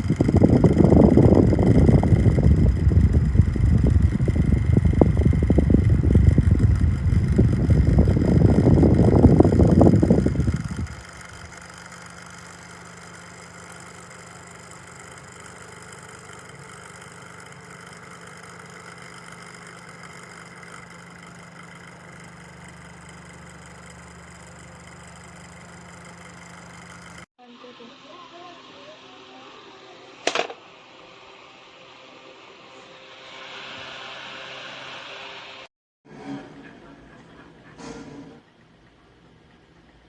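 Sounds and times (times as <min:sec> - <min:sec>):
fan blowing on microphone: 0:00.0 - 0:30.5.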